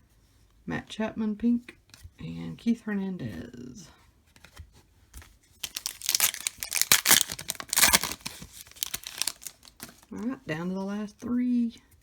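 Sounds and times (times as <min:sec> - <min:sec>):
foil wrapper tearing and crinkling: 0:05.6 - 0:10.1.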